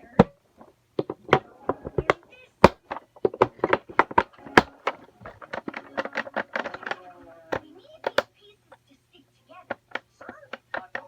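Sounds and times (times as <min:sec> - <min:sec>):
plastic toys clicking and knocking: 0:00.0 - 0:08.8, 0:09.5 - 0:11.0
pitched toy sound: 0:04.1 - 0:11.0.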